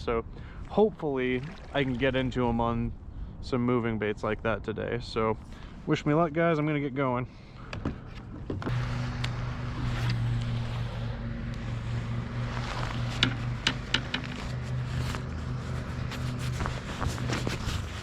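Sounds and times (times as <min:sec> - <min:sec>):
low mechanical hum: 0:07.6 - 0:18.0.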